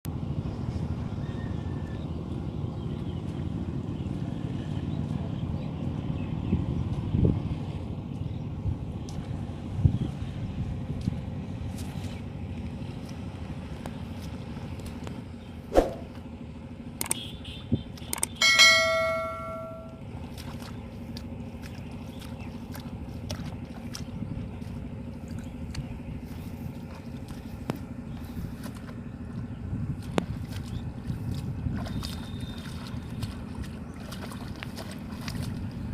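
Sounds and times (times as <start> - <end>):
outdoor background noise: 0.1 - 35.9
dull thump: 15.7 - 16.1
scattered clicks: 17.0 - 17.2, 18.0 - 18.4
ringing metallic strike: 18.4 - 20.0.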